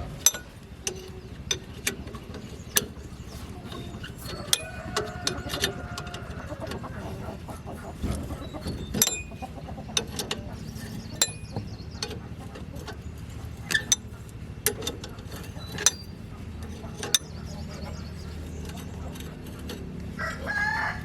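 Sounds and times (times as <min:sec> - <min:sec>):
metallic clinks and knocks: 0:00.0 - 0:06.2, 0:08.8 - 0:12.2, 0:13.6 - 0:19.9.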